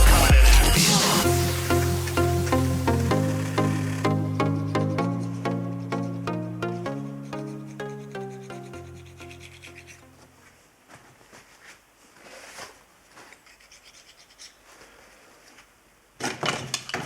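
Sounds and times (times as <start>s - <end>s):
background music chord: 0.0s - 10.2s
hand scraper scraping metal: 7.2s - 10.1s.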